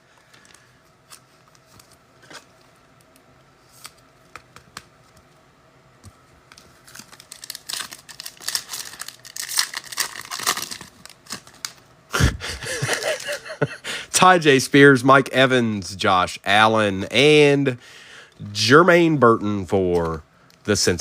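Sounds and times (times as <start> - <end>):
wrapper tearing and crinkling: 6.6 - 11.8.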